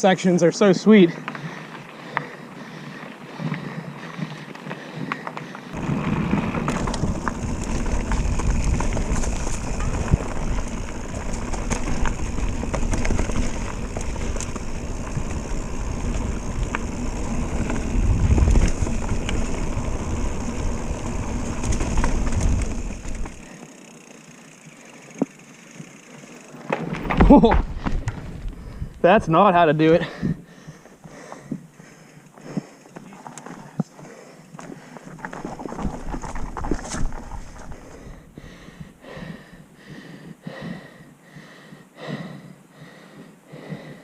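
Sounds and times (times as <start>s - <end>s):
bike rattling: 0.0s - 40.7s
bike tyres rumbling on dirt: 0.6s - 44.0s
wind buffeting microphone: 5.8s - 23.4s.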